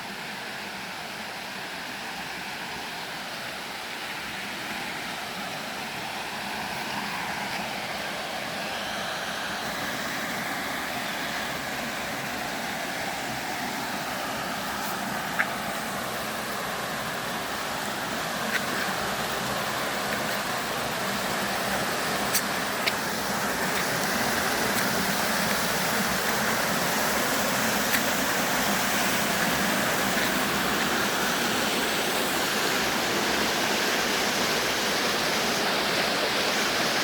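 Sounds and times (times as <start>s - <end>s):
flowing water rushing: 0.0s - 37.0s.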